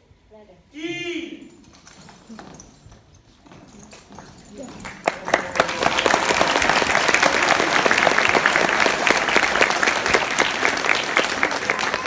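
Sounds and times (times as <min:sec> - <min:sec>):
audience applauding: 0:04.9 - 0:12.0.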